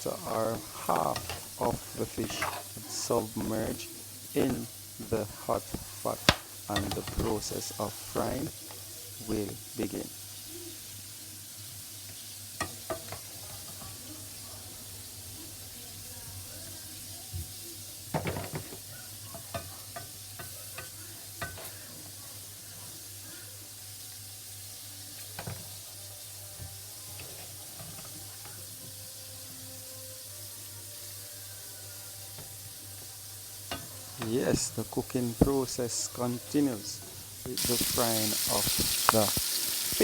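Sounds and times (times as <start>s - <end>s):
fish frying in oil: 0.0s - 40.0s
oil clicks and pops: 38.6s - 40.0s.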